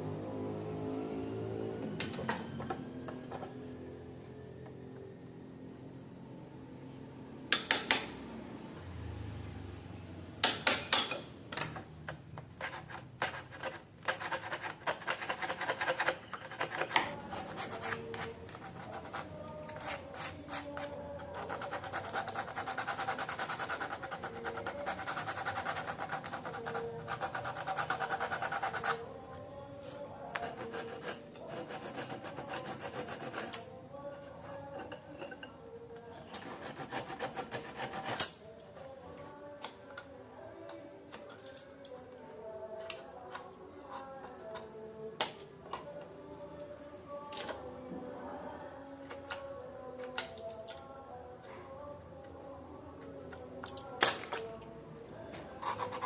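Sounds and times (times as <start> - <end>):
file rasping on workpiece: 12.6 - 29.0, 30.4 - 33.7, 36.4 - 38.4, 55.6 - 56.0.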